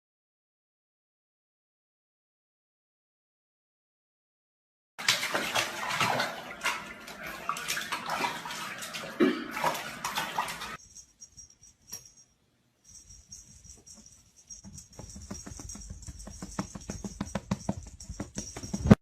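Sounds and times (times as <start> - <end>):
water splashing hard: 5.0 - 10.8.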